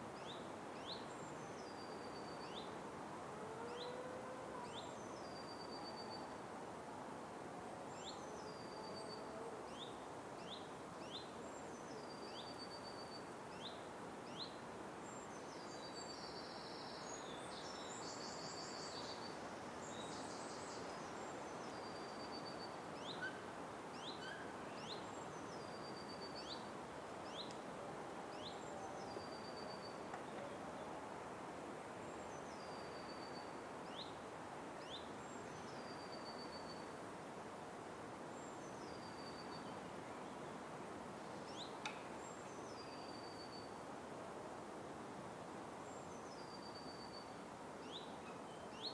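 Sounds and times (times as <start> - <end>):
steady soft hiss: 4.6 - 48.9.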